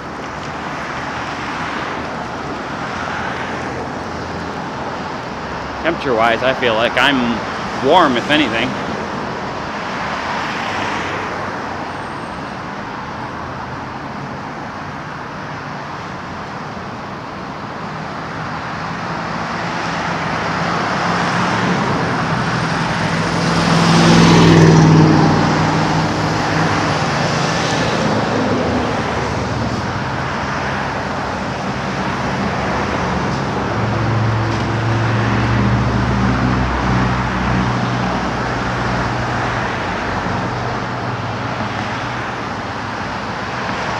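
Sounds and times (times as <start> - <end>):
road traffic: 0.0 - 43.9.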